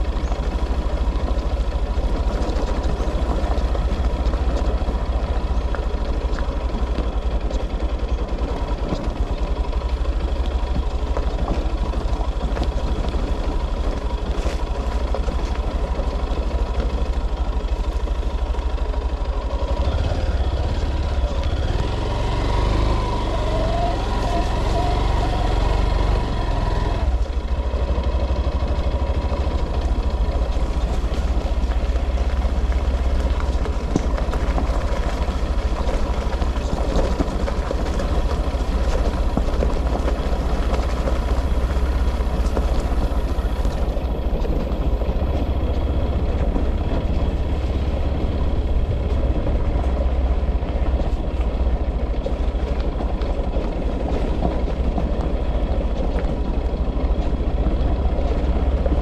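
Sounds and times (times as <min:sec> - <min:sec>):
vehicle engine rumbling: 0:00.0 - 0:59.0.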